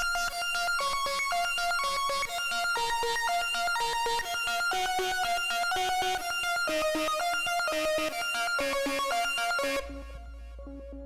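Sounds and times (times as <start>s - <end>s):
arpeggiated synthesizer notes: 0.0s - 11.0s.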